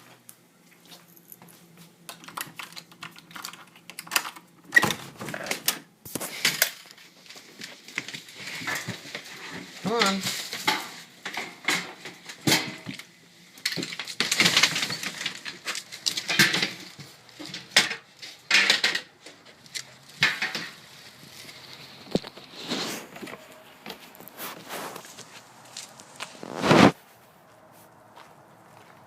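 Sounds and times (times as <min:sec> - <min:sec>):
footsteps: 0:00.0 - 0:02.0, 0:20.6 - 0:29.0
rustling: 0:19.2 - 0:28.9
scuffs: 0:21.7 - 0:29.0.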